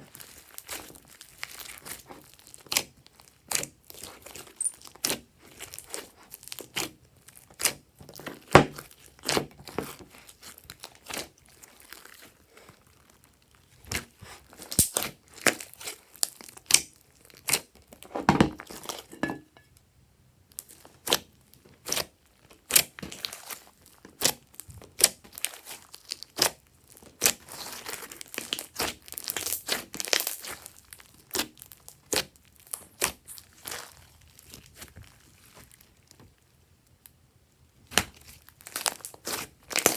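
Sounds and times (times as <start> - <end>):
slime sticky clicks and pops: 14.7 - 15.1.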